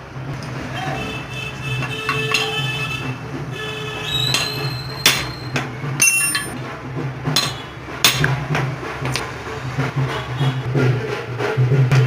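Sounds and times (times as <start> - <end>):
metal tools clinking on engine parts: 2.1 - 2.7, 6.0 - 6.6
high metallic ringing: 6.0 - 6.6.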